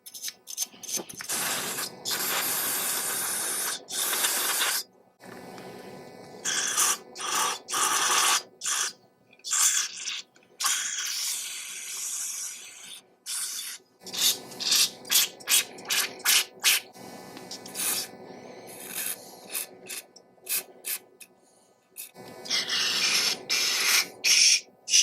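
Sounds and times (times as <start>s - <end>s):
spray can hissing: 0.1s - 4.8s, 17.6s - 18.1s, 18.8s - 21.0s.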